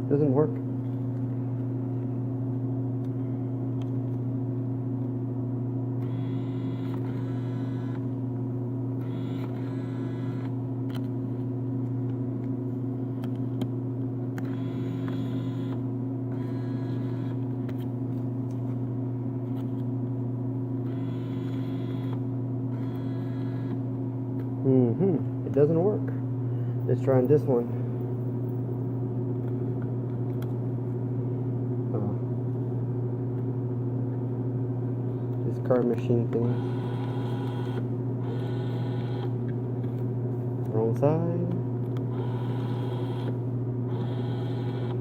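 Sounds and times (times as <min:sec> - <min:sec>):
vending machine humming: 0:00.0 - 0:45.0
bill acceptor motor whirring: 0:06.0 - 0:08.2, 0:09.0 - 0:11.0, 0:14.4 - 0:17.6, 0:20.8 - 0:23.9, 0:35.8 - 0:39.6, 0:42.0 - 0:45.0.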